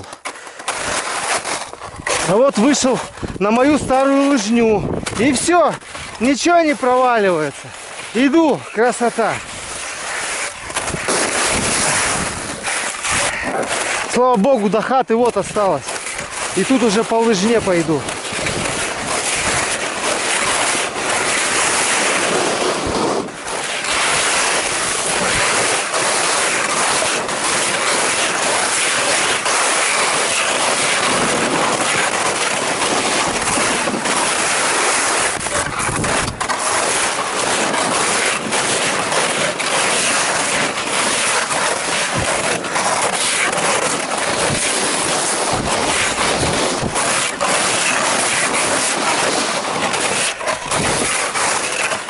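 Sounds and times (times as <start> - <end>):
skis sliding through snow: 0.0 - 52.0
wind on microphone: 2.9 - 3.9, 4.6 - 6.2, 10.6 - 14.1, 17.6 - 26.3, 29.5 - 39.4, 43.5 - 51.9.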